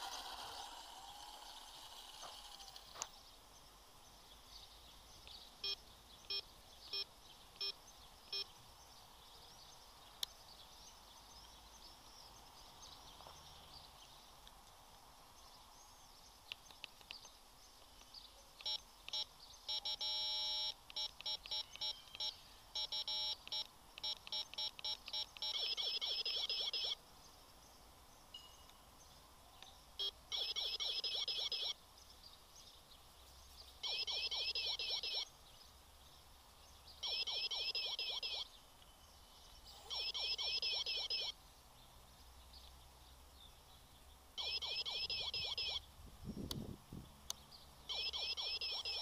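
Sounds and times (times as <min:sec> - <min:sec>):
high-pitched electronic beeps: 0:18.6 - 0:27.0, 0:30.0 - 0:31.8, 0:33.8 - 0:35.3, 0:37.0 - 0:38.5, 0:39.7 - 0:41.4, 0:44.4 - 0:45.8, 0:47.9 - 0:49.0.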